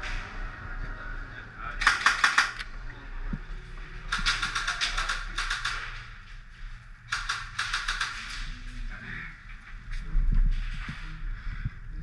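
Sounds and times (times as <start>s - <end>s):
airsoft guns firing bursts: 1.8s - 2.6s, 4.1s - 5.8s.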